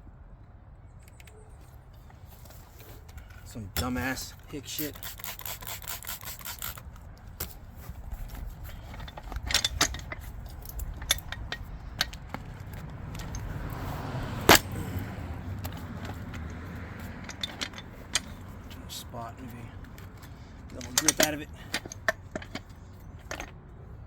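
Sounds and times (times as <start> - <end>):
steady low rumble: 6.7 - 23.3
metallic clinks and knocks: 7.4 - 23.6.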